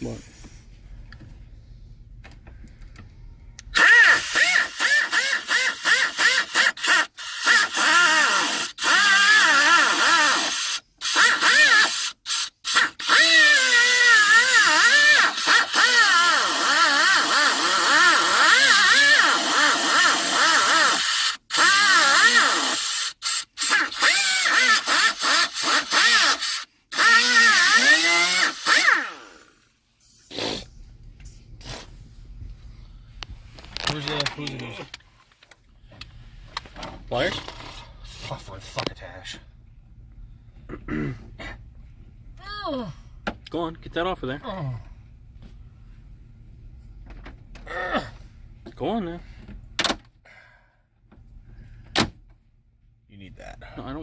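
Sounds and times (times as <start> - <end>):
power grinder cutting plastic: 3.8 - 29.6.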